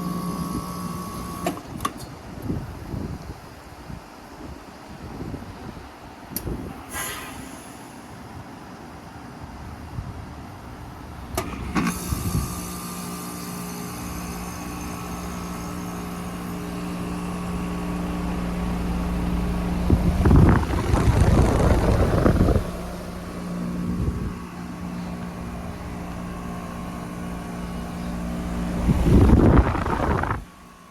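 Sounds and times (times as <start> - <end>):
compressor humming: 0.0 - 1.8, 10.6 - 30.9
loud rushing surges: 18.6 - 27.7, 28.5 - 30.6.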